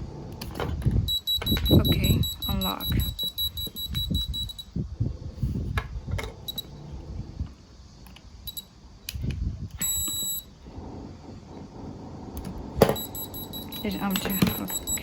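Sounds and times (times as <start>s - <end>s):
high-pitched electronic beeping: 1.1s - 4.7s, 13.0s - 15.0s.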